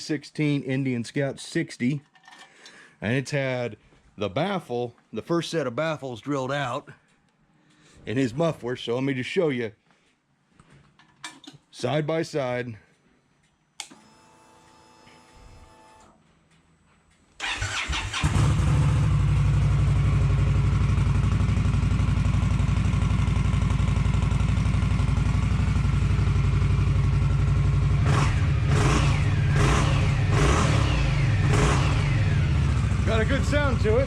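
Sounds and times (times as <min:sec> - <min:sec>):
motorcycle engine revving: 0:17.4 - 0:34.0
motorcycle engine starting and idling: 0:17.4 - 0:34.0.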